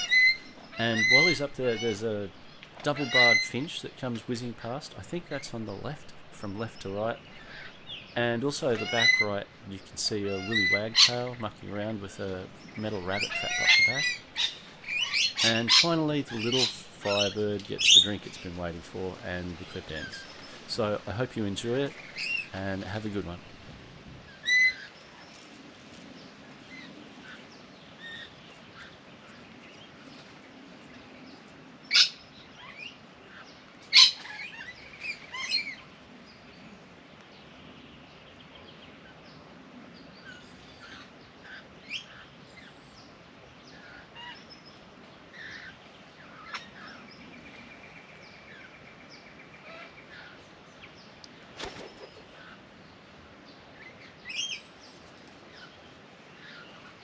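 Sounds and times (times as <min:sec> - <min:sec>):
rapid bird trill: 0:00.0 - 0:23.6
sharp bird calls: 0:00.0 - 0:23.7, 0:51.5 - 0:52.6
wild birds chirping: 0:00.0 - 0:23.7, 0:26.1 - 0:57.0.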